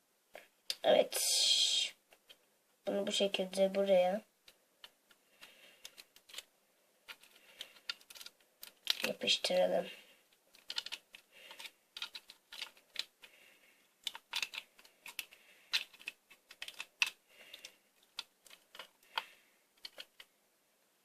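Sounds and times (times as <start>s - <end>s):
adhesive tape crackling: 4.4s - 9.4s, 10.3s - 20.3s.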